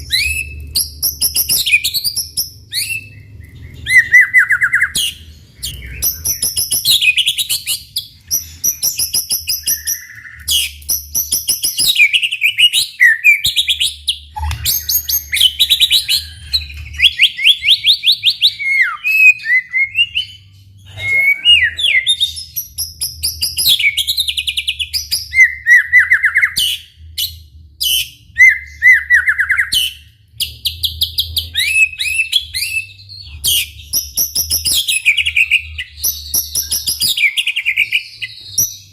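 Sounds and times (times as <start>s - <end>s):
bird singing trills and whistles: 0.0s - 38.9s.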